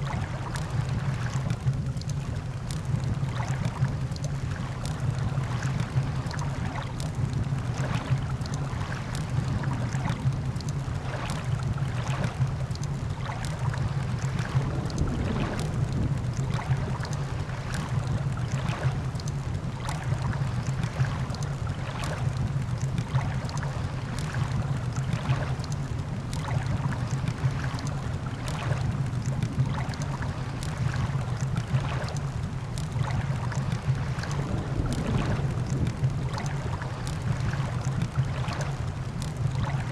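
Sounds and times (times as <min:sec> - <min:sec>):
campfire crackling and popping: 0:12.5 - 0:20.7, 0:24.8 - 0:39.6
ocean surf: 0:13.2 - 0:19.1, 0:26.8 - 0:39.9.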